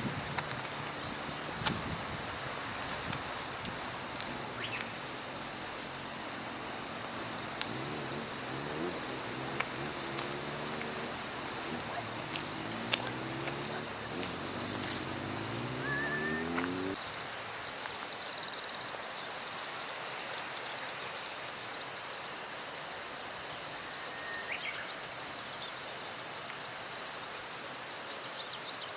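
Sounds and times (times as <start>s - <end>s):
small birds chirping: 0.0s - 28.9s
low hum rising in pitch: 7.7s - 17.0s.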